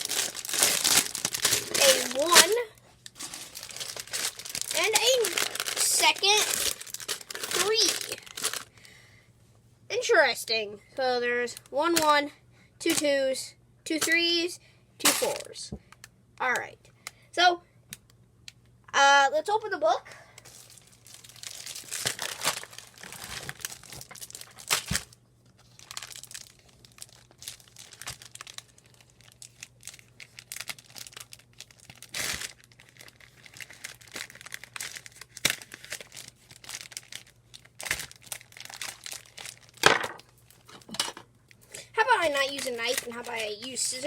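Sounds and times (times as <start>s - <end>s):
packaging crinkling and tearing: 0.0s - 8.8s, 20.4s - 44.0s.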